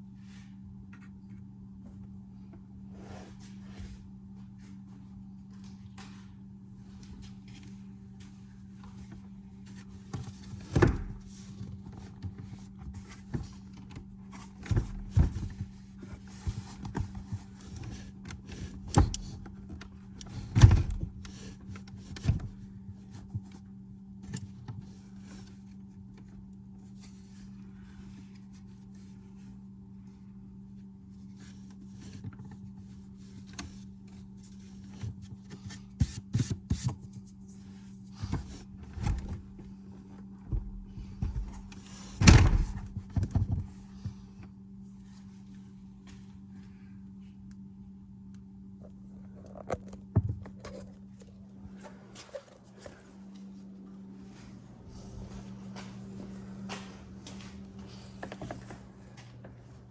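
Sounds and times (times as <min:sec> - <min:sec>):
steady low hum: 0:00.0 - 0:59.9
knocks and clunks of parts: 0:40.5 - 0:43.7.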